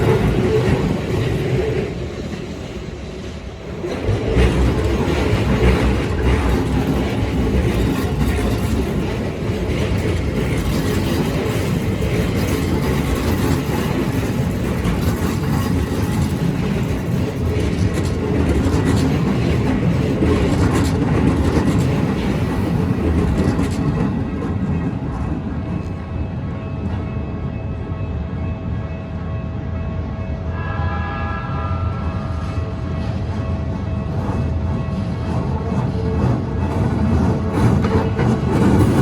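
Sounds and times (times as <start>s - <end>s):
electric train passing: 0.0s - 39.0s
wheels clattering over rail joints: 3.6s - 25.4s.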